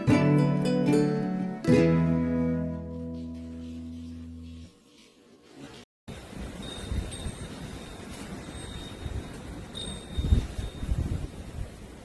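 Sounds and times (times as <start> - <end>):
high ringing tones: 6.6 - 11.0.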